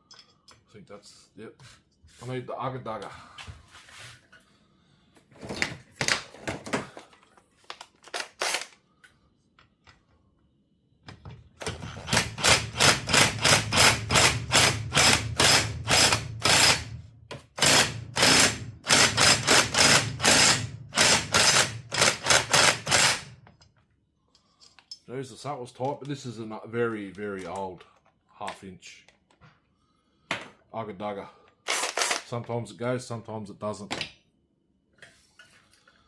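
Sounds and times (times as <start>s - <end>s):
impact wrench hammering: 11.7s - 23.3s.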